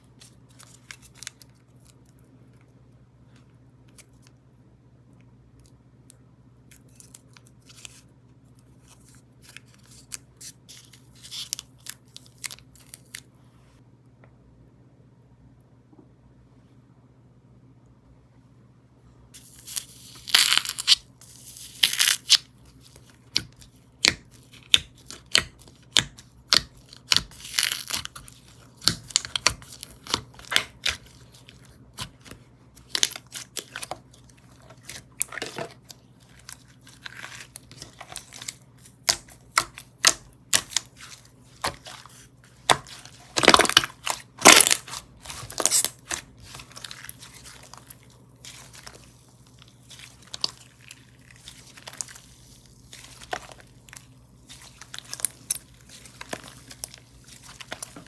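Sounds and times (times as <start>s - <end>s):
slime popping and crackling: 19.4s - 22.4s, 23.3s - 31.1s, 42.6s - 49.0s.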